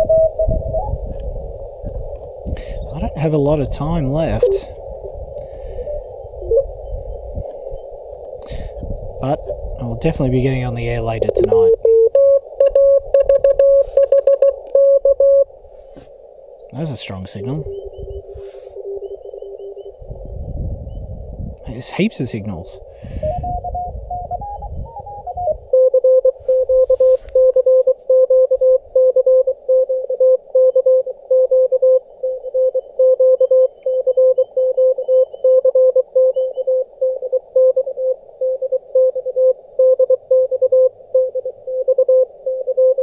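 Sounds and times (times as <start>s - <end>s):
morse code tone: 0.0s - 0.9s, 4.3s - 4.7s, 11.1s - 15.5s, 18.5s - 19.9s, 23.2s - 43.0s
receiver hiss: 0.0s - 20.1s, 21.6s - 43.0s
tone rising in pitch: 4.3s - 5.2s, 23.5s - 27.1s.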